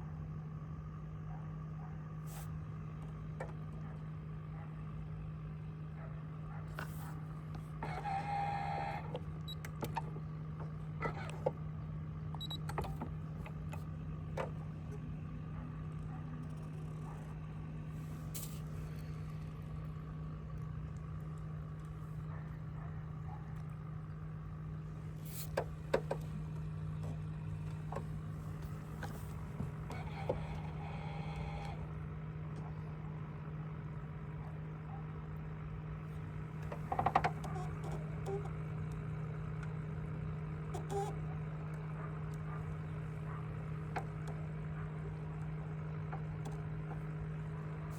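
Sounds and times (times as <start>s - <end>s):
small motor humming: 6.5s - 20.7s, 24.8s - 32.8s, 36.0s - 47.9s
light clicks and knocks: 25.3s - 30.4s.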